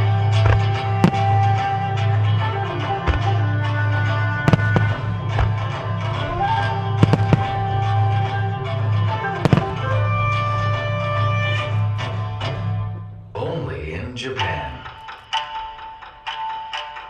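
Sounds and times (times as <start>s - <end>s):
fireworks bangs: 0.0s - 13.2s
music with long held notes: 0.0s - 17.0s.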